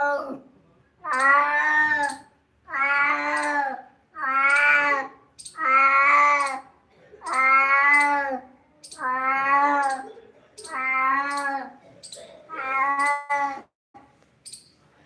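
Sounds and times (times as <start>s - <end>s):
cat meowing: 1.0s - 6.6s, 7.2s - 11.7s, 12.5s - 13.7s.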